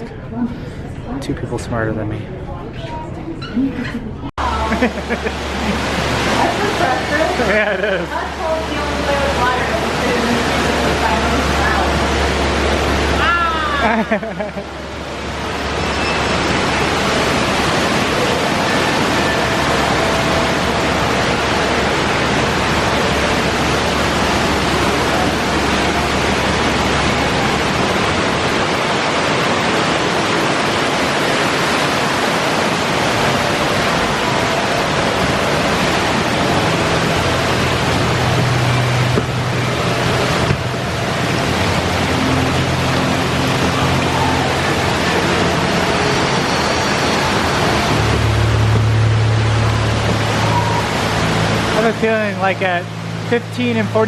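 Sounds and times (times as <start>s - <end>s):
fountain water splashing: 4.4s - 54.0s.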